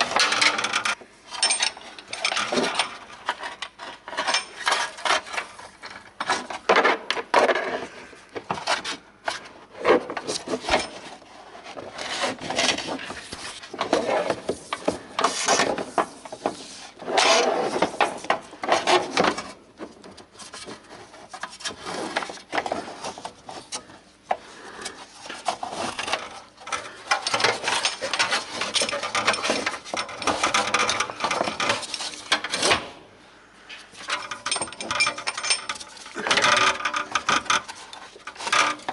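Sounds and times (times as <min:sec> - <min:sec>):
scraping and rubbing on metal: 0:20.3 - 0:32.7, 0:33.9 - 0:38.9.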